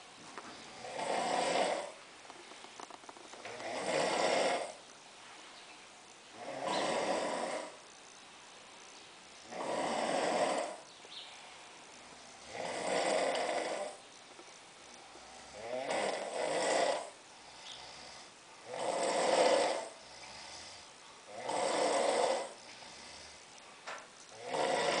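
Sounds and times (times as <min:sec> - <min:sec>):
man snoring: 0:00.7 - 0:02.0, 0:03.4 - 0:04.8, 0:06.4 - 0:07.8, 0:09.4 - 0:10.8, 0:12.4 - 0:14.0, 0:15.1 - 0:23.4, 0:24.3 - 0:25.0.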